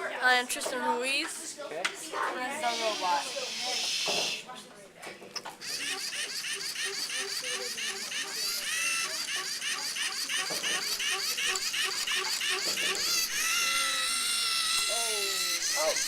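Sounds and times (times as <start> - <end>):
robot motors whining: 5.6 - 16.0.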